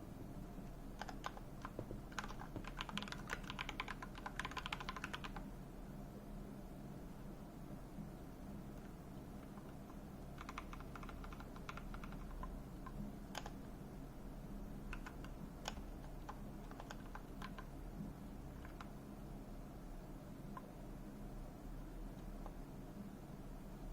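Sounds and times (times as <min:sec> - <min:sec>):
steady low hum: 0:00.0 - 0:23.9
typing on keyboard: 0:01.0 - 0:05.4, 0:08.8 - 0:13.6, 0:14.9 - 0:17.7, 0:18.5 - 0:19.0.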